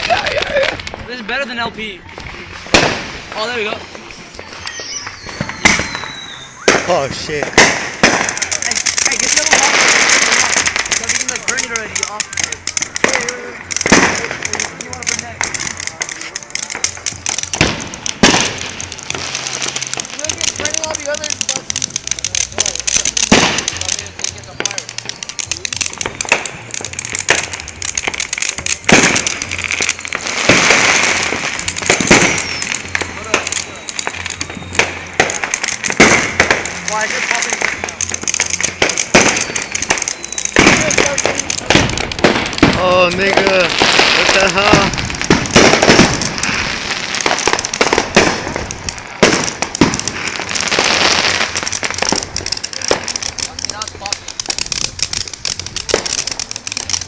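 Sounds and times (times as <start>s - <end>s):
firework crackling pops: 0.0s - 57.0s
firework hissing spray: 0.0s - 57.0s
sharp loud pops: 4.9s - 8.6s.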